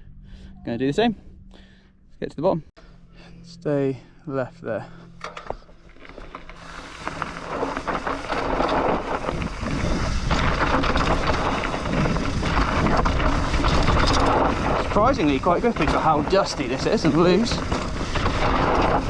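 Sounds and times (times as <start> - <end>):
bike tyres skidding on dirt: 6.0 - 19.0
wind on microphone: 8.2 - 19.0.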